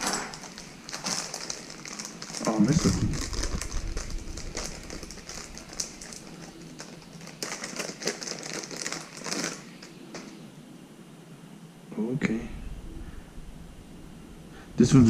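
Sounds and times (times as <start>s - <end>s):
packaging rustling and crinkling: 0.0s - 10.4s.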